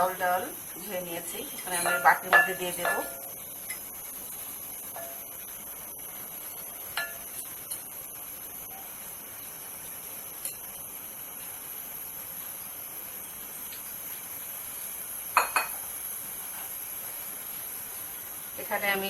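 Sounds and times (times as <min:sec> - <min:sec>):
faint steady hiss: 0:00.0 - 0:19.0
kitchenware clinking: 0:01.6 - 0:03.9, 0:07.0 - 0:07.8, 0:15.4 - 0:15.8.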